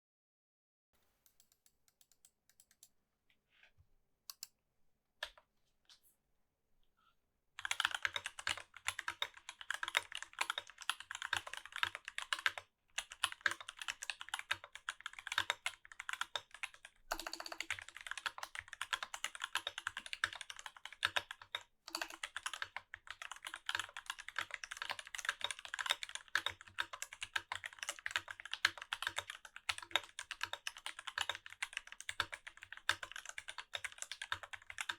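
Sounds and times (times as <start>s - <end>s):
mechanical keyboard typing: 7.6s - 34.9s.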